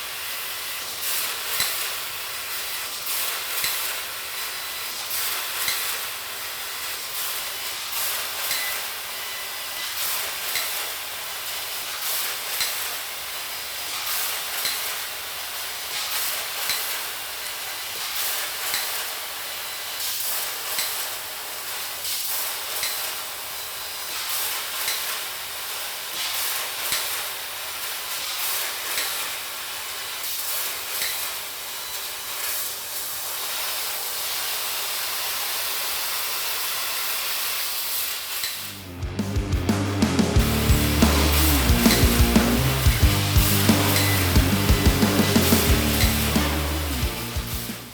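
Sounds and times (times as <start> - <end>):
angle grinder grinding steel: 38.6 - 47.9.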